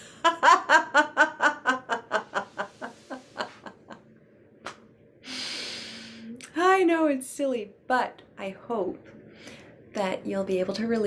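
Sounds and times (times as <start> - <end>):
woman laughing: 0.0 - 4.0
noisy drawn breath: 5.2 - 6.4, 9.3 - 9.8.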